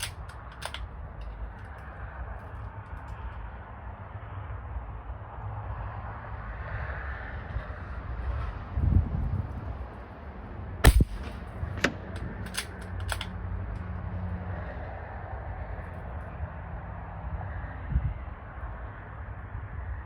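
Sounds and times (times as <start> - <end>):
air rifle shot: 0.0 - 0.8, 10.8 - 13.3.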